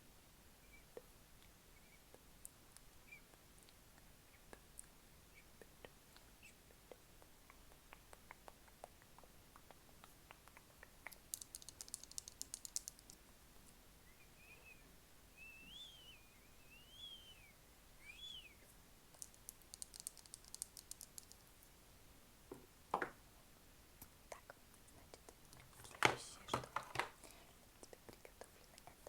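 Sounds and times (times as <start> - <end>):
faint squeaky chirps: 0.6 - 1.0, 1.7 - 2.2, 3.0 - 3.4, 4.2 - 6.7, 14.0 - 18.7.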